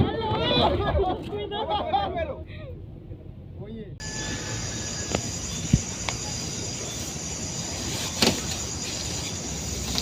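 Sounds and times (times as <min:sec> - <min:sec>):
crickets chirping: 0:04.0 - 0:10.0.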